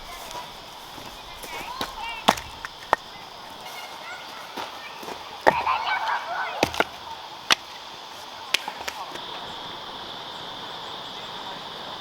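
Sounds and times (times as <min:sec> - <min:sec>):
axe chopping firewood: 0:01.0 - 0:03.6, 0:04.6 - 0:06.0, 0:06.6 - 0:07.8, 0:08.5 - 0:09.2.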